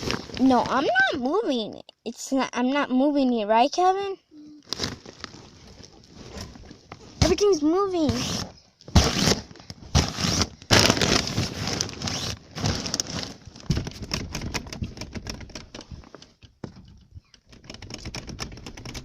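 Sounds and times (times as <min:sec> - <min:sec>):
rustling and scraping handling: 0:00.0 - 0:01.4, 0:04.6 - 0:19.0
clicks and taps: 0:13.7 - 0:19.0.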